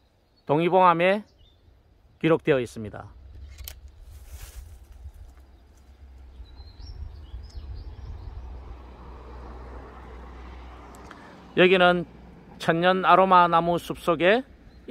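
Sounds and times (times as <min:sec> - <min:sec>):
rustling: 0:03.5 - 0:05.9.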